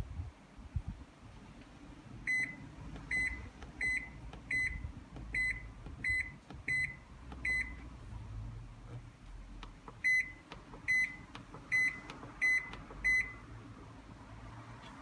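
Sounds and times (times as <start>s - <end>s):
washing machine beeping: 2.2s - 7.8s, 9.8s - 13.5s.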